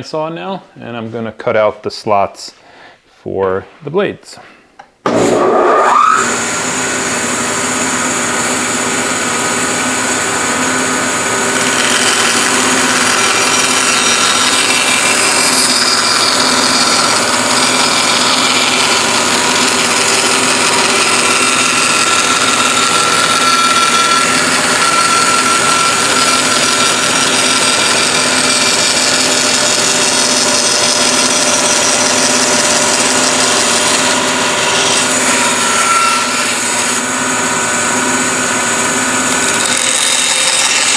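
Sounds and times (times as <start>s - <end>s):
bandsaw motor hum: 5.1s - 40.9s
saw blade cutting wood: 5.1s - 40.9s.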